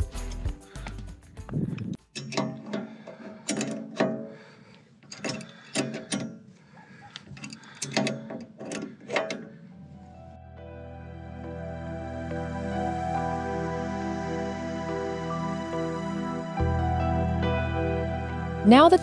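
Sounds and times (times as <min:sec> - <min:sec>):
background music: 0:00.0 - 0:01.8, 0:10.0 - 0:19.0.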